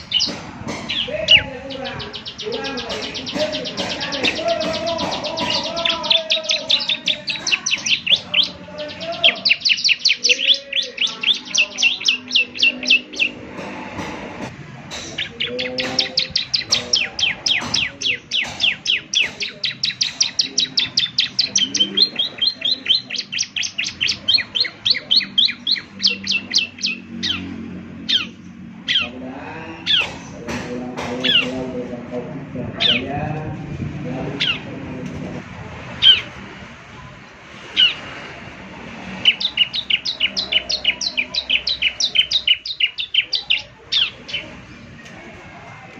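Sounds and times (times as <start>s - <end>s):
bird singing sharp chip notes: 0.0s - 14.2s, 14.8s - 29.1s, 29.8s - 31.8s, 32.8s - 33.1s, 39.0s - 44.9s.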